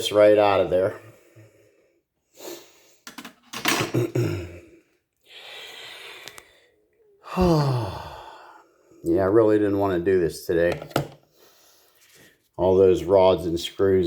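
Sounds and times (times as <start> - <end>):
man breathing out and sighing: 4.3 - 9.0
man groaning: 7.2 - 8.4.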